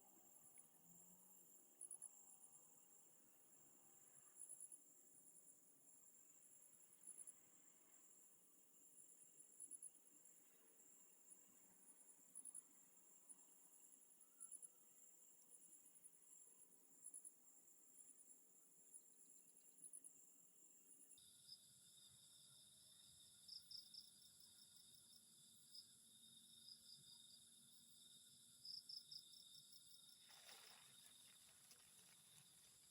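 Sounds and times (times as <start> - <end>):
crickets chirping: 0.0 - 32.9
lower insect trill: 0.1 - 32.9
night insects trilling: 0.2 - 5.2, 5.9 - 15.1, 24.8 - 32.9.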